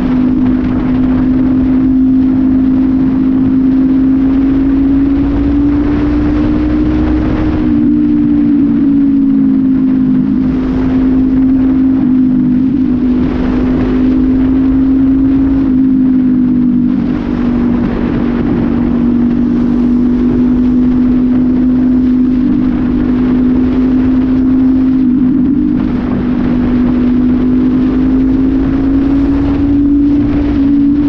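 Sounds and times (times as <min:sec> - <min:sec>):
motorcycle engine cruising: 0:00.0 - 0:31.0.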